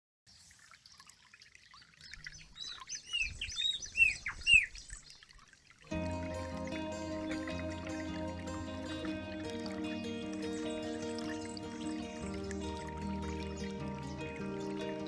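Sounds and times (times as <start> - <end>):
birds chirping and whistling: 2.4 - 5.1, 6.0 - 15.0
background music: 5.9 - 15.0.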